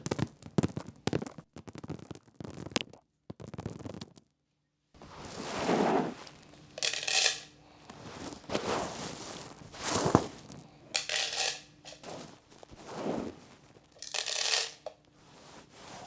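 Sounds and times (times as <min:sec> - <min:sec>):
corn kernels scattering: 0:05.0 - 0:16.0.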